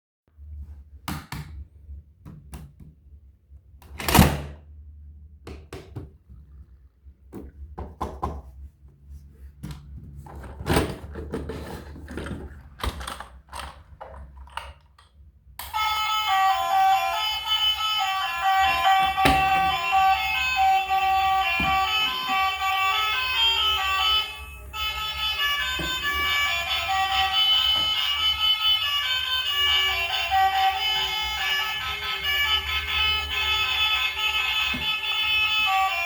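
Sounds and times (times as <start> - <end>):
toys knocking and clattering: 9.6 - 15.2
music: 15.7 - 36.0.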